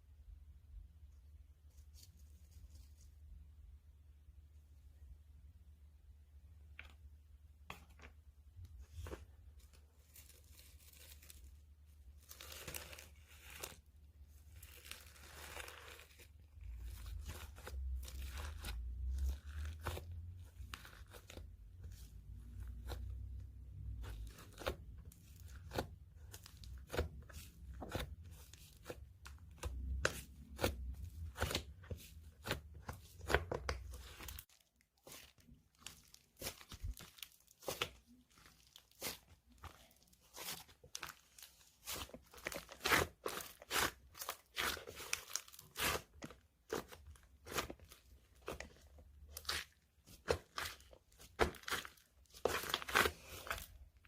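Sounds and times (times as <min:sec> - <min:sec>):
slime crackling and tearing: 0:12.2 - 0:54.0.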